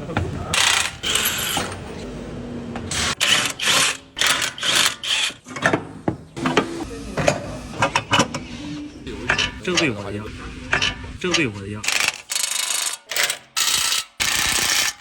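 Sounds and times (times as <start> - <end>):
power tool ratcheting bursts: 0.6 - 1.6, 2.9 - 5.4, 11.8 - 15.0.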